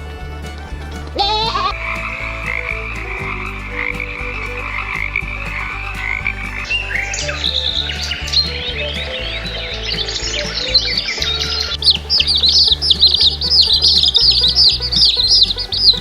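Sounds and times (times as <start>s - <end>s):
frogs croaking in chorus: 1.2s - 16.0s
high bird chirps: 1.2s - 16.0s.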